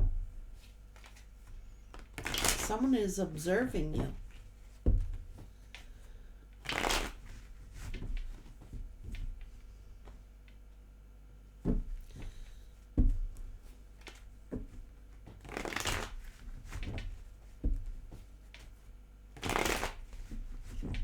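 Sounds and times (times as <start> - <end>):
cards shuffling rustle: 1.9 - 3.4, 15.4 - 16.2.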